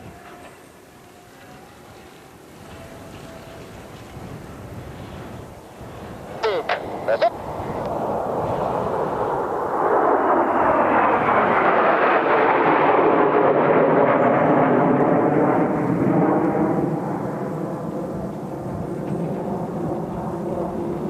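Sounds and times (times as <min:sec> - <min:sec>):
jets flying past: 0:04.4 - 0:21.0.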